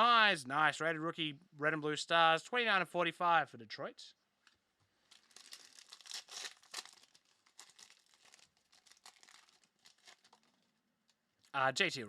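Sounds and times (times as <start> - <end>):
cards and packaging rustling: 4.5 - 10.7.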